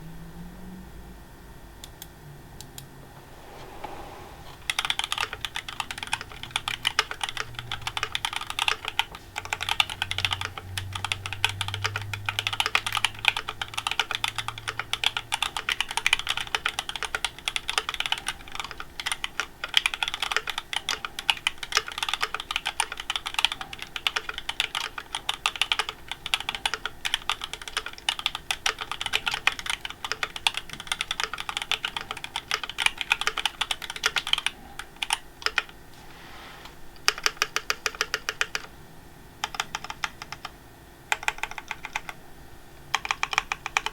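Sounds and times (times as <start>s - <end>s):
fast typing on mechanical keyboard: 4.6s - 35.8s, 37.0s - 38.7s, 39.4s - 40.5s, 41.1s - 42.2s, 42.9s - 43.9s.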